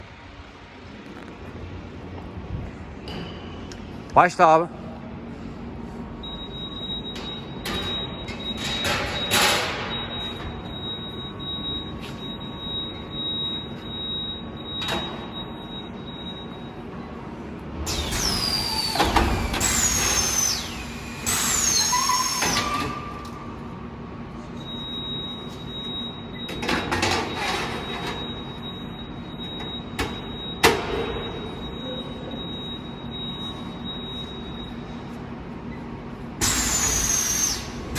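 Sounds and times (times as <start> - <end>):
metal bending machine whining: 17.8 - 23.9, 36.4 - 37.9.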